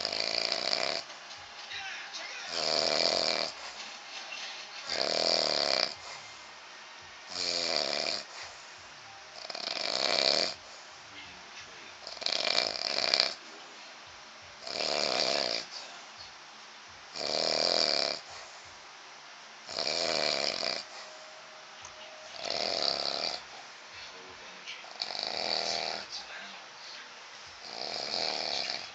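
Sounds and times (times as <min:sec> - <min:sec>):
man snoring: 0:00.0 - 0:01.2, 0:02.4 - 0:03.8, 0:04.8 - 0:06.4, 0:07.3 - 0:08.5, 0:09.4 - 0:10.8, 0:12.0 - 0:13.4, 0:14.6 - 0:15.9, 0:17.1 - 0:18.5, 0:19.6 - 0:21.1, 0:22.4 - 0:23.6, 0:24.8 - 0:26.1, 0:27.6 - 0:28.9.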